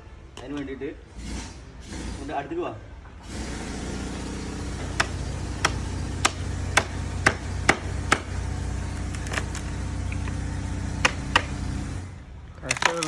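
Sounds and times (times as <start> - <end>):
steady low hum: 3.3 - 12.6
hammer striking wooden chair: 4.8 - 8.3.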